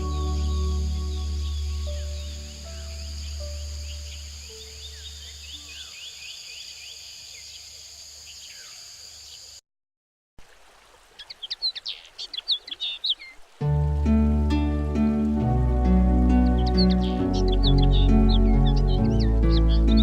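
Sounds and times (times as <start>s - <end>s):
background music: 0.0s - 5.1s, 13.6s - 20.0s
high-pitched insect drone: 0.0s - 5.5s
birds chirping: 0.0s - 9.6s, 11.2s - 13.6s, 14.5s - 20.0s.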